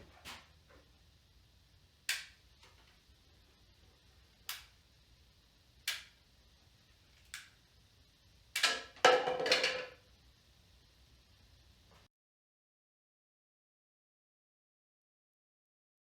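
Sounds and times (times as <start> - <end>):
toy revolver sharp snaps: 2.1 - 2.4, 4.5 - 4.8, 5.9 - 6.2, 7.3 - 7.5.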